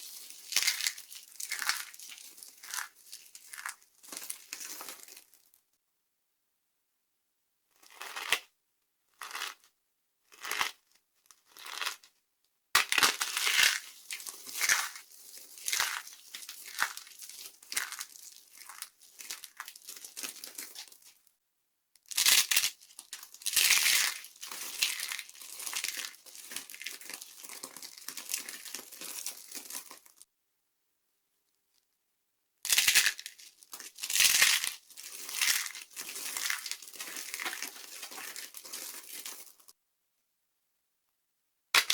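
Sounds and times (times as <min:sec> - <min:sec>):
dry soap crunching and crumbling: 0:00.0 - 0:05.6, 0:07.7 - 0:08.5, 0:09.1 - 0:09.7, 0:10.3 - 0:12.1, 0:12.8 - 0:21.2, 0:22.0 - 0:30.3, 0:32.6 - 0:39.8.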